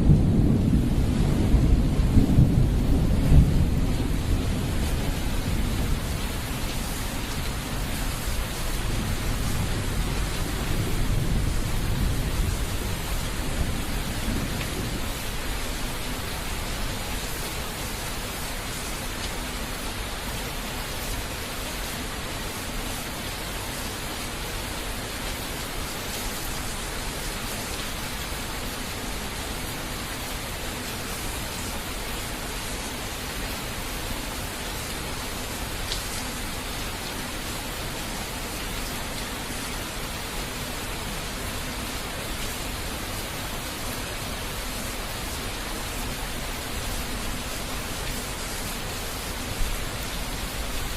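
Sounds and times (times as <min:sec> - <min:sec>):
thunder rolling: 0:00.0 - 0:06.1
heavy rain: 0:00.0 - 0:50.9.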